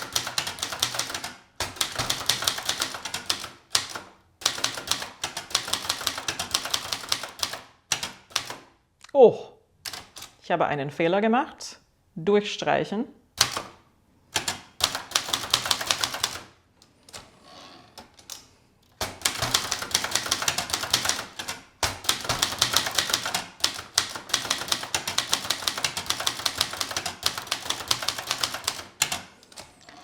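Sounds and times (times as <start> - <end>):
typewriter key strikes: 19.0 - 29.2.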